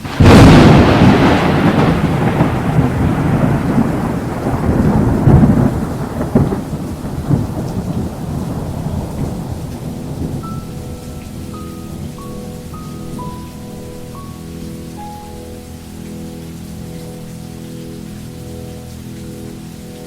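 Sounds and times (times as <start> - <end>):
thunderclap and rumble: 0.0 - 13.9
steady rain: 0.0 - 20.0.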